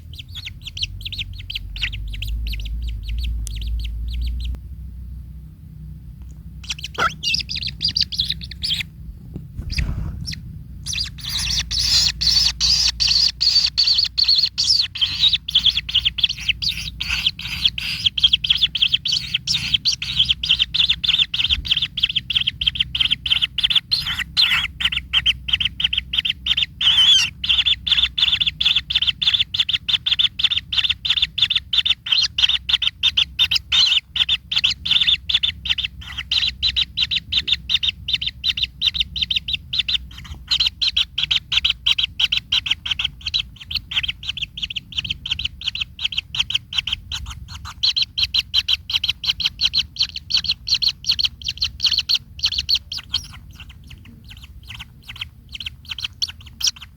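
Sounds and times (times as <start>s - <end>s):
kingfisher chattering calls: 6.6s - 8.9s, 9.7s - 28.4s.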